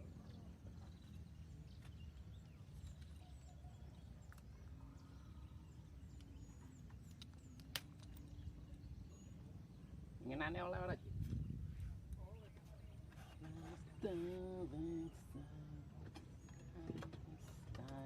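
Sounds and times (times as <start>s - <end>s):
faint bird chirps: 0.0s - 10.0s.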